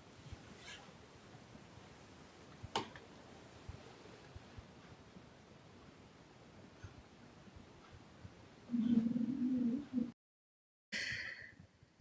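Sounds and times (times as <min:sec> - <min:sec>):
soft low tick: 0:06.6 - 0:09.0.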